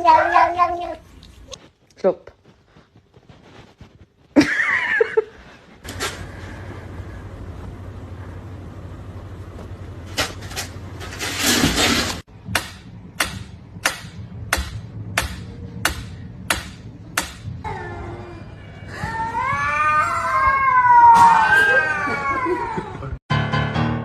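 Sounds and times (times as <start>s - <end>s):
cat yowling: 0.0s - 1.0s, 19.0s - 22.9s.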